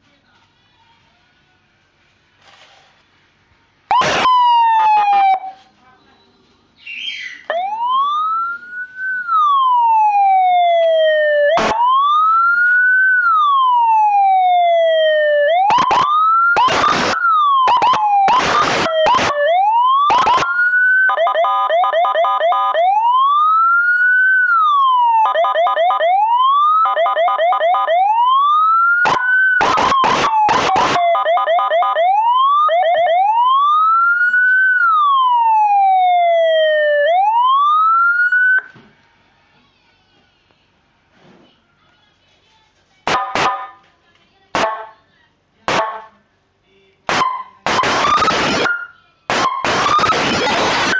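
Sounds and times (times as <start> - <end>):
choppy siren pulses: 3.9 - 5.6, 7.5 - 38.7, 47.1 - 50.9
electronic siren wailing: 3.9 - 5.6, 7.5 - 38.7, 47.1 - 50.9
fast siren warble: 3.9 - 5.6, 7.5 - 38.7, 47.2 - 50.9.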